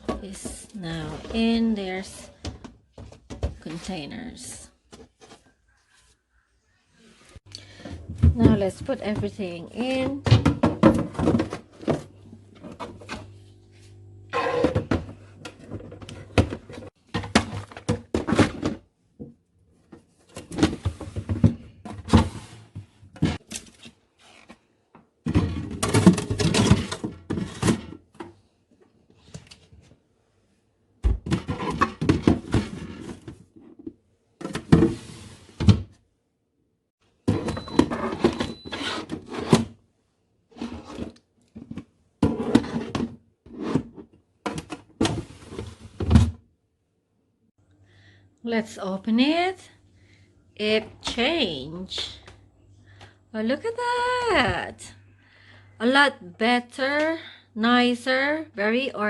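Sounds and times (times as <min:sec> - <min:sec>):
plastic containers clunking: 0:07.7 - 0:13.2, 0:14.4 - 0:23.5
freezer drawers and door handled: 0:07.8 - 0:13.3, 0:14.3 - 0:24.6, 0:25.2 - 0:28.4, 0:31.0 - 0:36.0, 0:37.2 - 0:39.8.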